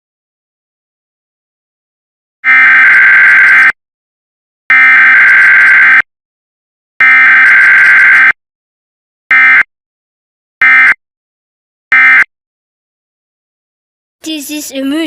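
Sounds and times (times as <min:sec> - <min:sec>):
electronic emergency alert beeps: 0:04.7 - 0:06.0, 0:07.0 - 0:08.4, 0:09.3 - 0:09.7, 0:10.6 - 0:11.0, 0:11.9 - 0:12.3.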